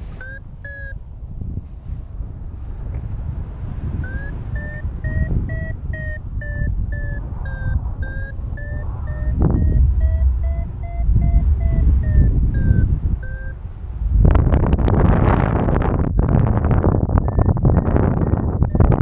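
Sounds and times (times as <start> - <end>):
variometer beeping: 0.0 - 1.2, 3.5 - 14.4, 15.6 - 19.0
wind buffeting microphone: 0.0 - 19.0.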